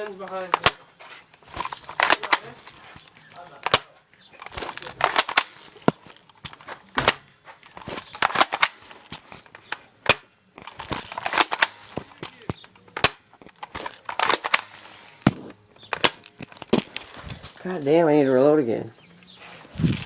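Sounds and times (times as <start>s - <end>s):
airsoft gun firing: 1.5s - 9.4s, 10.0s - 17.0s.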